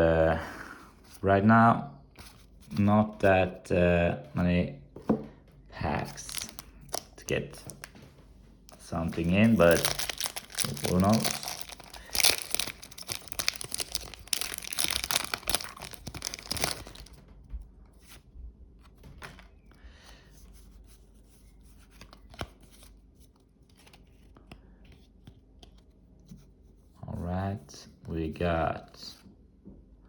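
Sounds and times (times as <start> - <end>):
foil wrapper tearing and crinkling: 6.2 - 7.9, 8.7 - 17.2.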